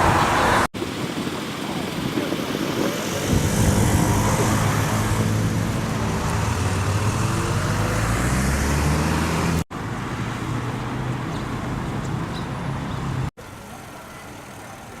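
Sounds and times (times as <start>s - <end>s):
road traffic: 0.0s - 15.0s
vehicle engine running: 0.8s - 9.9s.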